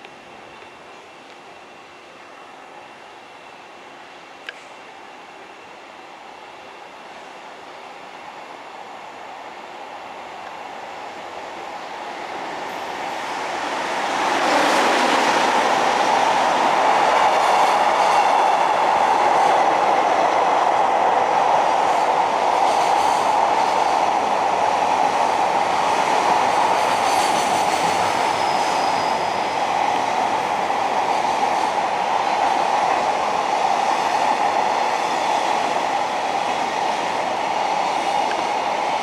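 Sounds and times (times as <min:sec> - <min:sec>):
train running on tracks: 0:00.0 - 0:39.0.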